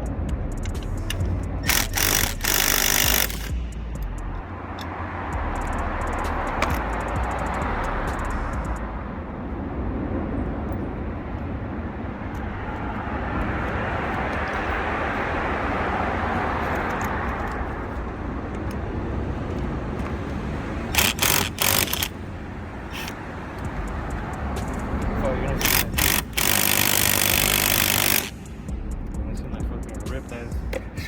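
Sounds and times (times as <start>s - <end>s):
road traffic noise: 0.0s - 31.0s
vehicle passing: 0.4s - 30.7s
sharp clicks or knocks: 21.0s - 22.1s.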